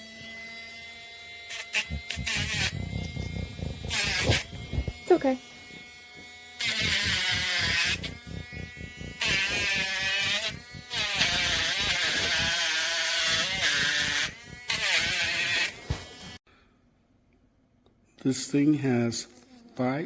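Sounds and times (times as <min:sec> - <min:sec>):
rotary tool motor whining: 0:00.0 - 0:16.4
grinding hiss: 0:01.5 - 0:16.2.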